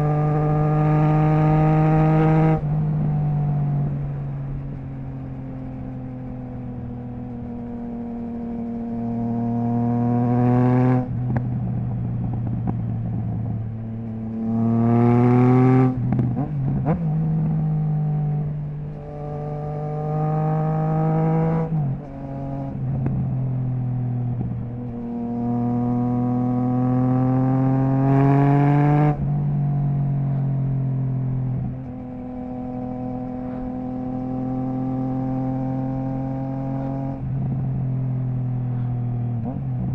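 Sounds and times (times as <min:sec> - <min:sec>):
motorcycle engine accelerating hard: 0:00.0 - 0:39.9.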